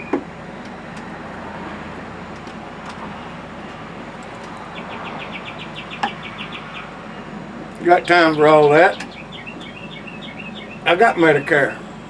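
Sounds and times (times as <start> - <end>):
distant road traffic: 0.0 - 12.0
small bird trilling: 4.5 - 7.0, 8.0 - 11.5.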